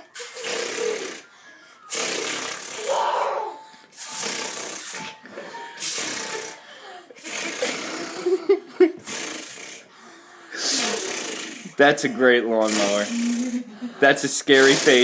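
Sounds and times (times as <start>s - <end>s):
child imitating lawnmower engine: 10.6s - 11.8s, 12.6s - 13.8s, 14.6s - 15.0s.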